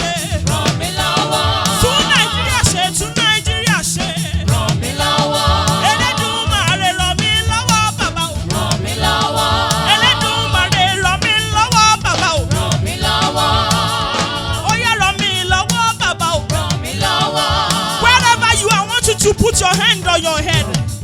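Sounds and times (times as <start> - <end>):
person singing: 0.0 - 12.4
drum groove and bass: 0.0 - 21.0.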